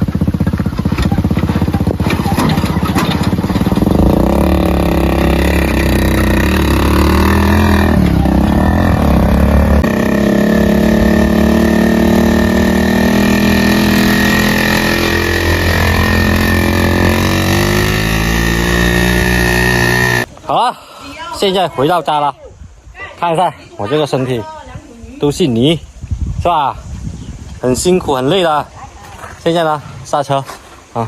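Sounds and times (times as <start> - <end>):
motorcycle engine running: 0.0 - 20.3.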